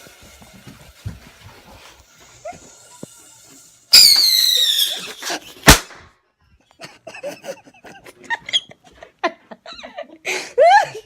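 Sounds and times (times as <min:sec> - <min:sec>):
firework whistle: 0:02.9 - 0:05.9
firework bang: 0:03.9 - 0:06.1.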